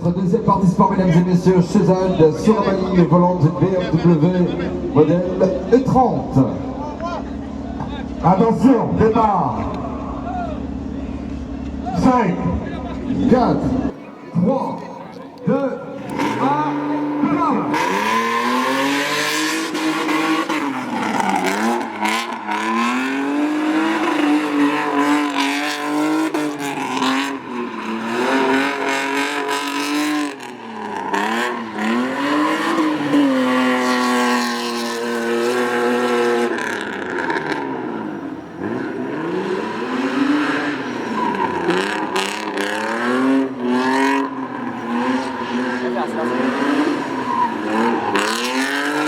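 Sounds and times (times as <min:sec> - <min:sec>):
tyres squealing: 0:13.9 - 0:36.4, 0:38.6 - 0:49.0
car engine revving hard: 0:15.4 - 0:49.0.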